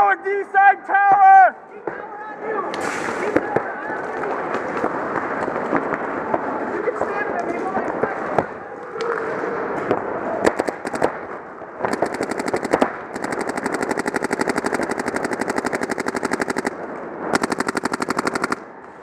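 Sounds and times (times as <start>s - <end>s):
paintball markers firing: 10.4s - 11.2s, 11.8s - 18.7s.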